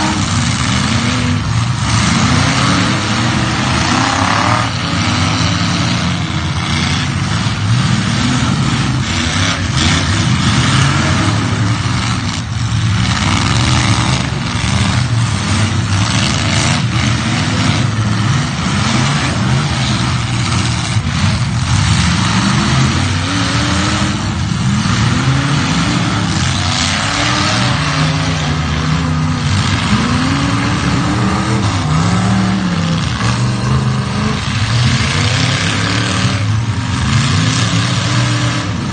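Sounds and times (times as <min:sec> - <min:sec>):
car engines revving: 0:00.0 - 0:38.9.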